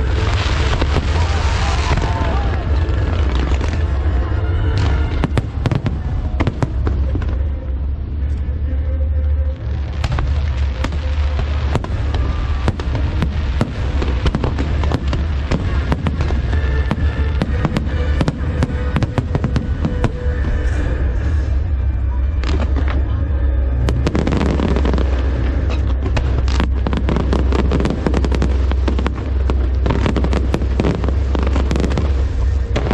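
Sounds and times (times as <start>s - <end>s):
fireworks cracking and banging: 0.0s - 7.9s, 9.5s - 21.8s, 22.4s - 32.9s
deep rumble: 0.0s - 32.9s
show music: 0.0s - 32.9s.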